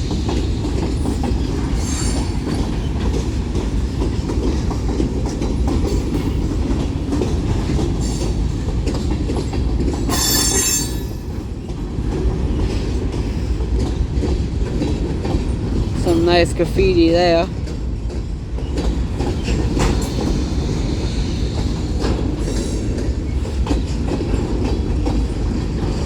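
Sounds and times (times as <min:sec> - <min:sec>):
train wheel squeal: 0:00.0 - 0:03.4, 0:09.8 - 0:11.8, 0:18.6 - 0:25.3
freight train rumbling past: 0:00.0 - 0:26.0
clacking over rail joints: 0:00.1 - 0:16.8, 0:17.5 - 0:20.6, 0:21.6 - 0:26.0.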